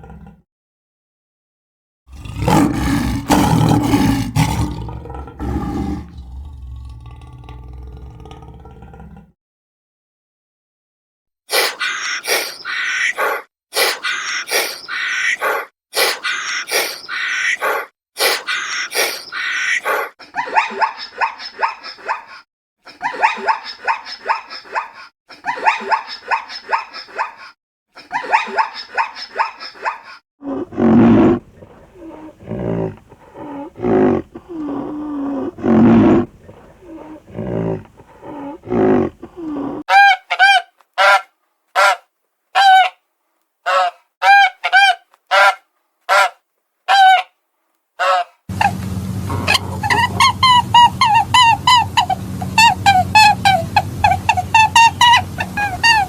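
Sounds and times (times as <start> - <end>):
deep animal calls: 2.1 - 9.0, 30.4 - 41.2, 48.0 - 56.0
fast harsh animal calls: 11.5 - 42.0, 43.7 - 46.3, 48.0 - 56.0.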